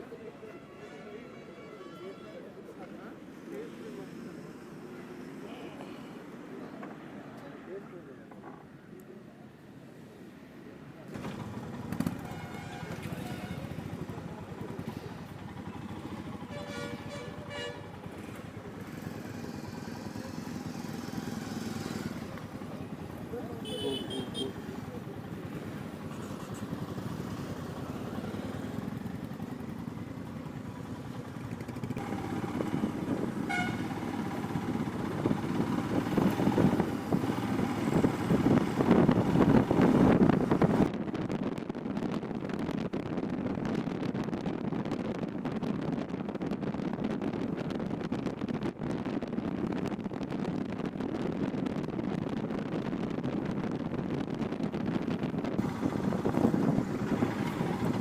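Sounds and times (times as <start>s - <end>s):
road and wind noise: 0.0s - 58.0s
motorcycle engine running: 11.2s - 40.9s, 54.8s - 58.0s.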